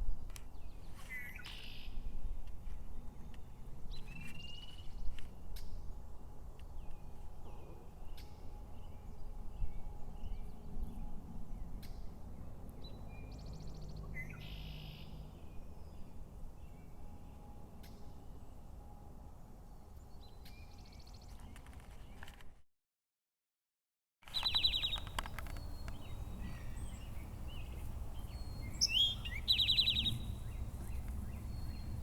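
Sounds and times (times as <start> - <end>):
sharp clicks: 24.3 - 27.9
songbirds chirping: 24.3 - 32.0
low background rumble: 24.5 - 32.0.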